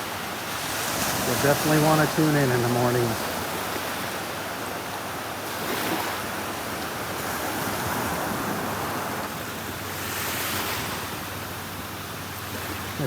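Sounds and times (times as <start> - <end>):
waves washing on sandy beach: 0.0 - 13.0.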